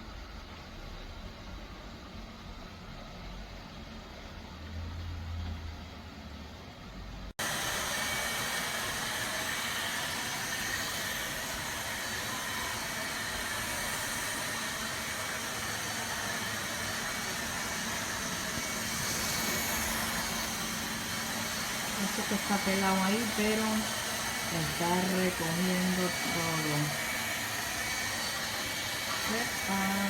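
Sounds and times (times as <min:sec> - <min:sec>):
robot vacuum suction hiss: 0:07.4 - 0:30.0.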